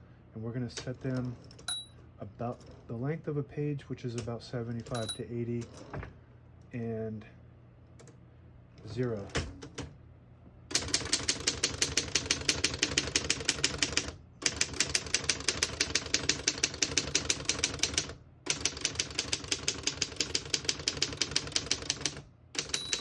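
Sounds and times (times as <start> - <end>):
manual typewriter typing fast: 10.7 - 23.0.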